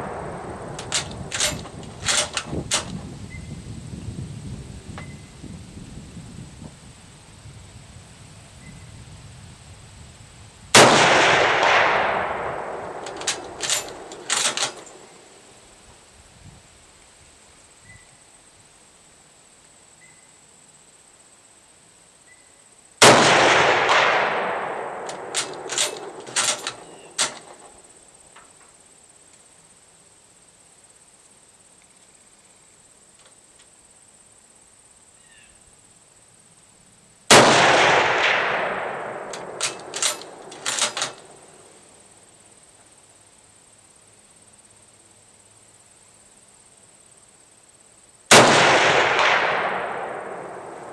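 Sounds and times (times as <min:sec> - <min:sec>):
rifle shots with echo: 0:00.0 - 0:02.9, 0:10.8 - 0:15.3, 0:23.0 - 0:27.7, 0:37.3 - 0:41.5, 0:48.3 - 0:50.9
sharp metallic clicks: 0:00.6 - 0:03.0, 0:10.8 - 0:15.2, 0:23.0 - 0:27.8, 0:37.3 - 0:41.6.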